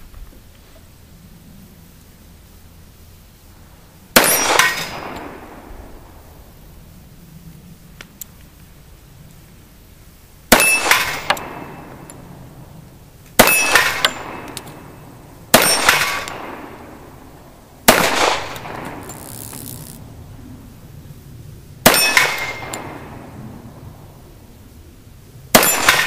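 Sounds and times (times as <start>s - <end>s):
pistol shots: 4.2s - 5.4s, 10.5s - 12.0s, 13.4s - 14.6s, 15.5s - 17.0s, 17.9s - 19.1s, 21.8s - 23.0s, 25.6s - 26.0s.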